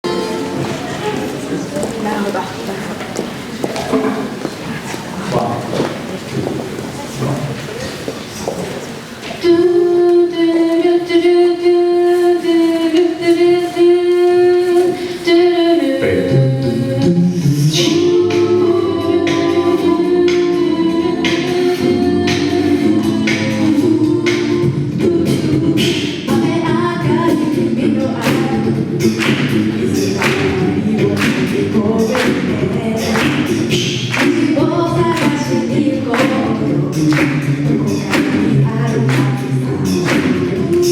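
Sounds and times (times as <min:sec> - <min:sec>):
vocal percussion beat: 0:09.0 - 0:40.9
lower voices singing harmony: 0:09.4 - 0:40.9.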